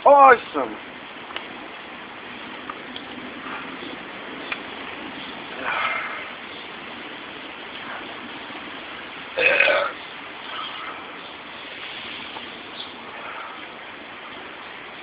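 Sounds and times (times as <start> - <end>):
rain hissing: 0.0 - 15.0
man burping: 9.4 - 10.0.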